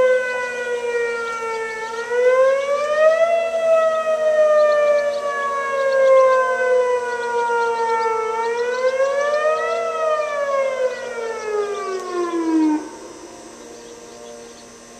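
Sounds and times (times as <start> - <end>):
warning siren wailing: 0.0 - 14.9.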